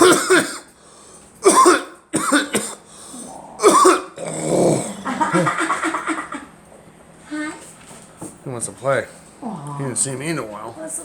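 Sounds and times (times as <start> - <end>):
person coughing harshly: 0.0 - 0.7, 1.4 - 2.9, 3.6 - 5.5.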